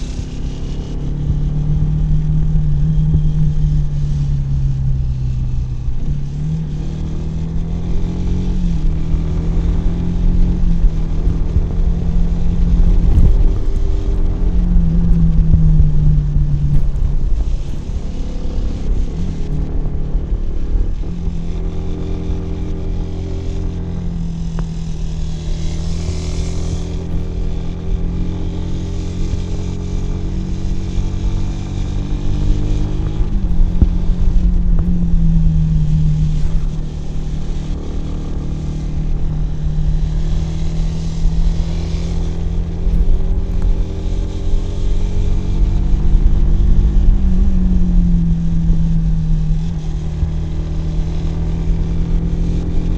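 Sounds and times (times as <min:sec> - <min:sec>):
motorcycle engine pulling: 0:07.9 - 0:19.6.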